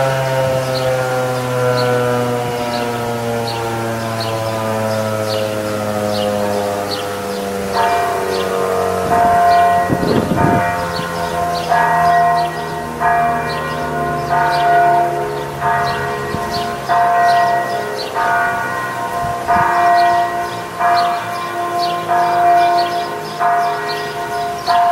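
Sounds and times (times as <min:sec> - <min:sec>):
bell tolling: 0:07.7 - 0:24.9.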